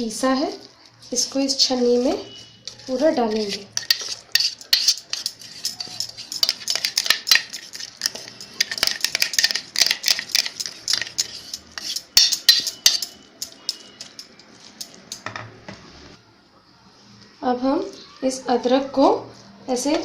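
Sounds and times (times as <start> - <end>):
spoon scraping metal: 1.1 - 15.2.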